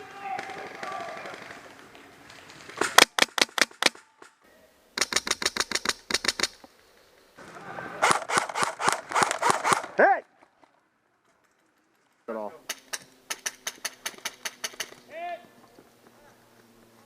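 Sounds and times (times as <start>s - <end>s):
airsoft rifle firing bursts: 8.0s - 10.0s.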